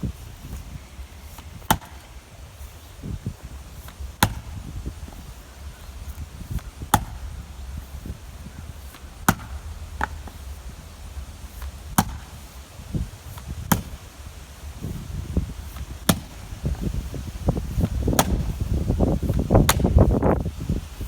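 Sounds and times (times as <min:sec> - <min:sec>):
axe splitting wood: 0:01.2 - 0:02.1, 0:03.0 - 0:05.4, 0:06.1 - 0:07.4, 0:08.7 - 0:10.6, 0:11.5 - 0:12.6, 0:13.3 - 0:14.1, 0:14.9 - 0:16.9, 0:17.6 - 0:18.7, 0:19.3 - 0:20.2.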